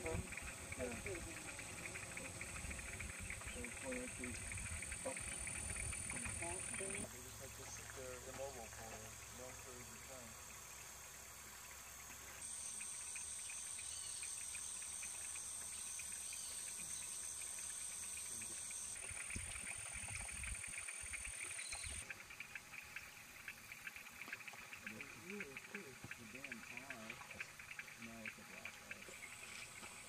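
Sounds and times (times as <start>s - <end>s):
high-pitched insect drone: 0.0s - 30.0s
pulsing insect chirr: 0.0s - 30.0s.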